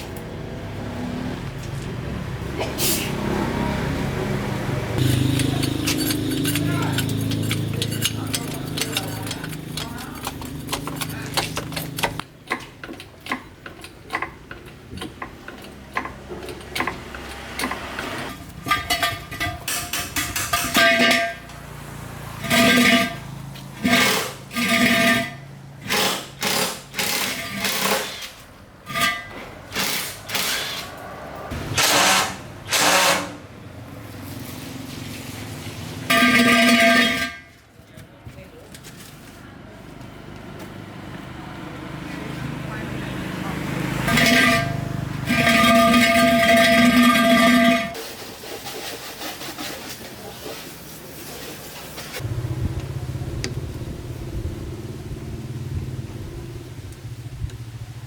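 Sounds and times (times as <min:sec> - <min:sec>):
tool clicks and taps on metal: 0:05.4 - 0:17.8.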